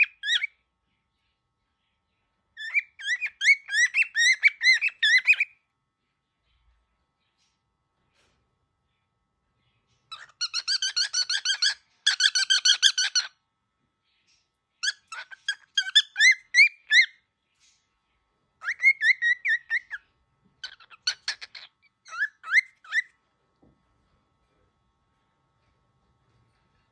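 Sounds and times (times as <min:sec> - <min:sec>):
cockatiel chirping: 0:00.0 - 0:00.5, 0:02.6 - 0:05.6, 0:10.1 - 0:13.3, 0:14.8 - 0:17.7, 0:18.6 - 0:20.0, 0:20.6 - 0:23.2.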